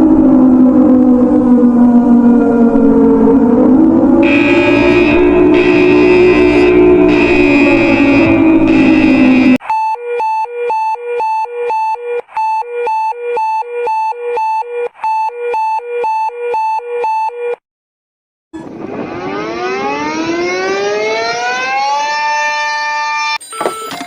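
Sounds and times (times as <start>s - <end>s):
siren winding up: 0.0s - 17.6s, 18.6s - 23.8s
alarm beeping high and low: 2.4s - 17.6s, 18.9s - 23.9s.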